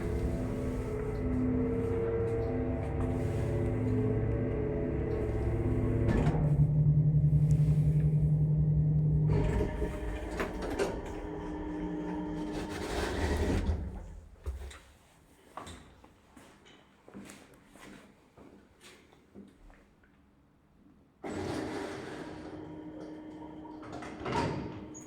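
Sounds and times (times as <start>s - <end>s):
elevator drive humming: 0.0s - 14.0s.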